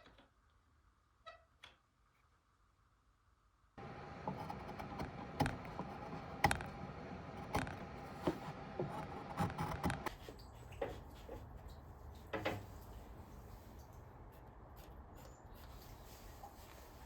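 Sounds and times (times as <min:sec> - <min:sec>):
wooden pieces and tools knocking: 0:03.8 - 0:10.1
steady low hum: 0:03.8 - 0:10.2.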